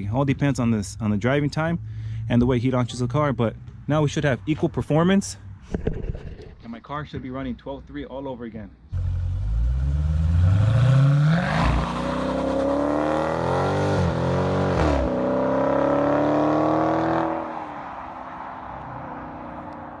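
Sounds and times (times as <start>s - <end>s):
car engine accelerating: 8.9s - 17.7s.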